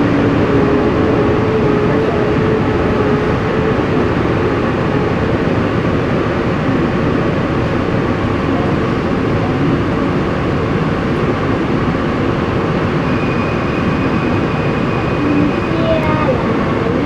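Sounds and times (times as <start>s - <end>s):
train wheels rumbling on rail: 0.0s - 17.0s
faint high tone: 13.1s - 17.0s.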